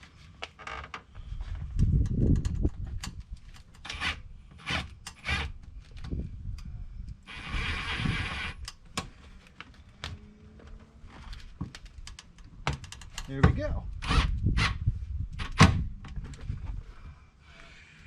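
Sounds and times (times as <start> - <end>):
screw scraping: 7.3 - 8.7.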